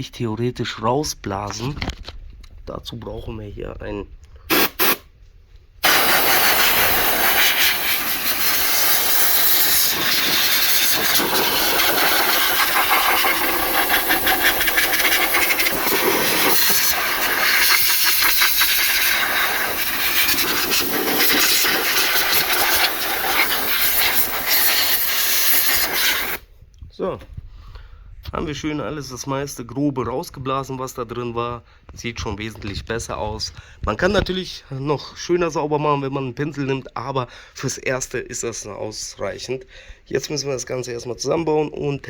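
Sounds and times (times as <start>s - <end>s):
compressed air blow gun hissing: 4.5s - 5.1s, 5.8s - 26.4s.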